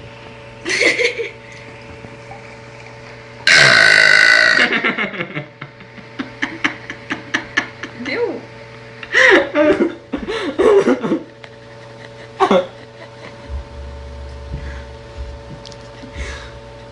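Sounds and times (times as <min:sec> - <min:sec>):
girl belching: 0:03.5 - 0:04.8.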